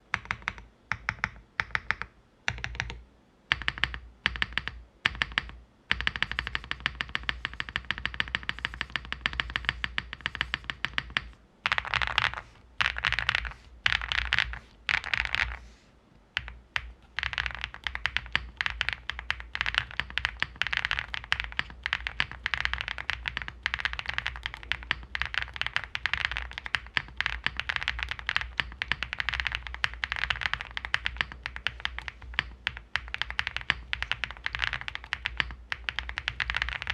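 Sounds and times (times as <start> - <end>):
keyboard typing: 0.0 - 36.9.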